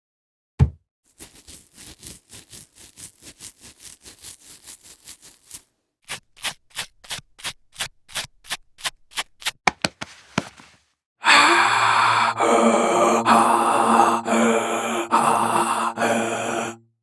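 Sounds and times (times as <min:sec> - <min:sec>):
fingernails scratching skin: 0:01.2 - 0:09.6.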